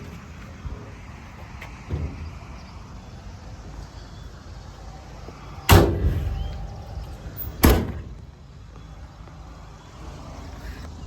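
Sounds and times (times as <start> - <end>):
truck door slamming: 1.8 - 2.6, 5.7 - 8.4.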